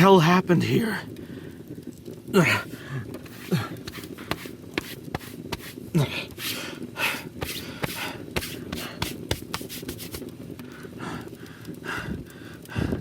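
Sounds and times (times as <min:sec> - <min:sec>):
breathing: 0:01.2 - 0:01.7, 0:02.5 - 0:09.1, 0:10.6 - 0:13.0
footsteps scuffing: 0:03.2 - 0:10.2.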